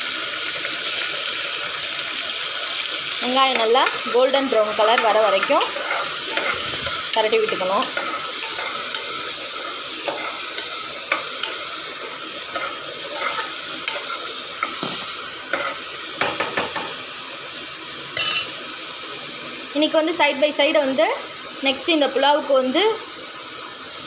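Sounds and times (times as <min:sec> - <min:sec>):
onions sizzling in oil: 0:00.0 - 0:24.0
spoon scraping metal pan: 0:03.4 - 0:11.8, 0:12.4 - 0:17.0, 0:18.2 - 0:18.6.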